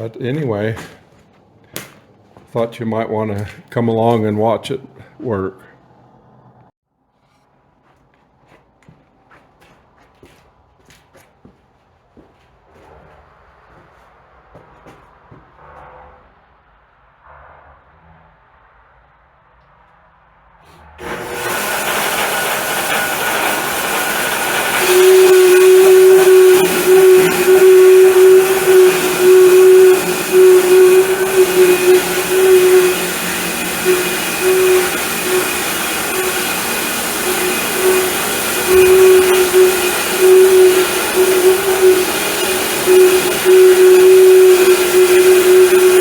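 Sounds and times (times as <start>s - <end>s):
sawmill running: 21.0s - 46.0s
strong steady hum: 21.0s - 46.0s.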